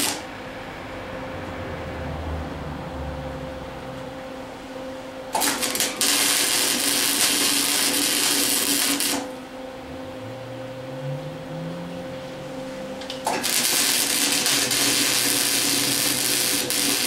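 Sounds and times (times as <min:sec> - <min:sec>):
welding arc crackling: 0:00.0 - 0:00.4, 0:05.3 - 0:09.5, 0:12.2 - 0:17.0.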